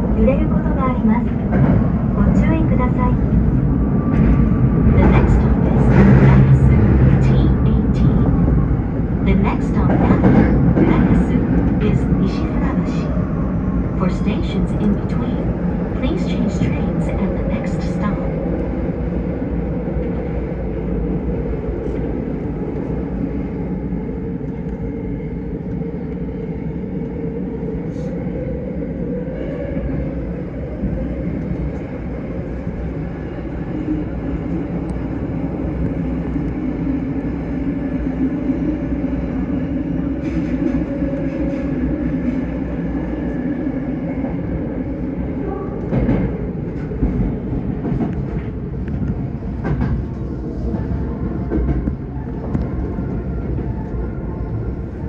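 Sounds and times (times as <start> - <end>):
train wheels rumbling on rail: 0.0 - 55.0.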